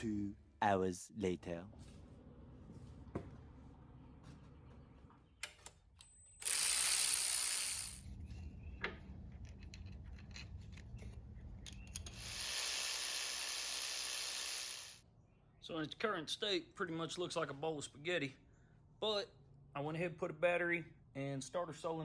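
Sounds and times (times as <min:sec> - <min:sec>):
handling clicks and rubbing: 0:09.0 - 0:12.2.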